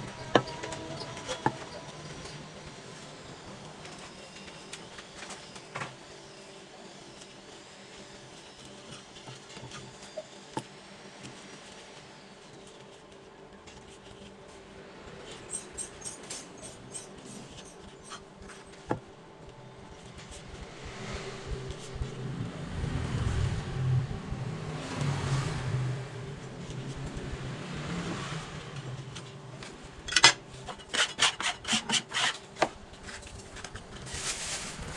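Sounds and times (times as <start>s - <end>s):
steady low hum: 18.8s - 30.8s.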